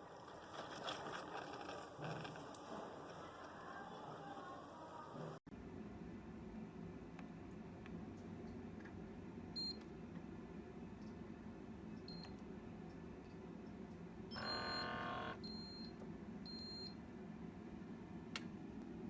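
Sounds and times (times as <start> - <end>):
long electronic tone: 14.4 - 15.4.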